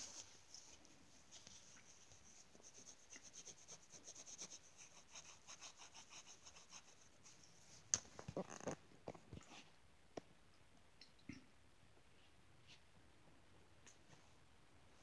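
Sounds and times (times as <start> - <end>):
coloured pencil scratching on paper: 2.3 - 7.2.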